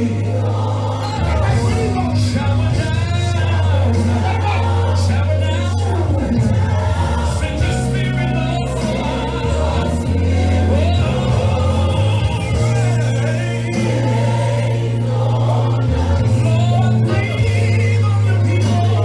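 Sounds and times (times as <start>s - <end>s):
gospel choir singing: 0.0s - 19.0s
held bass notes: 0.0s - 19.0s.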